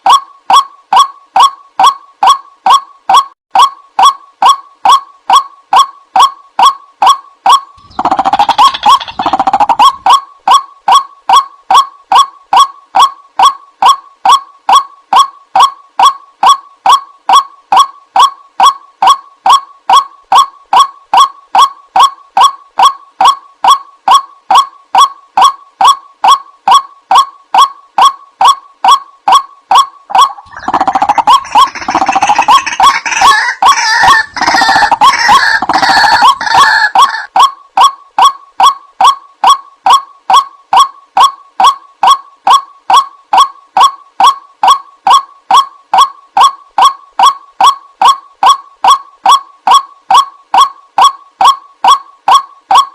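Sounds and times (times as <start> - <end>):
waterhen calling: 7.8 - 12.2, 29.7 - 37.5.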